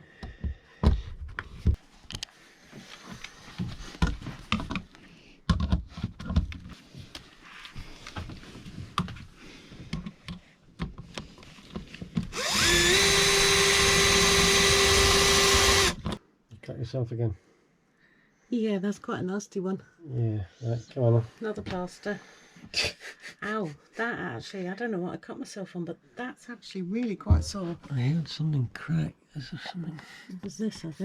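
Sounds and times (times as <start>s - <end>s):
electric drill running: 12.3s - 16.2s.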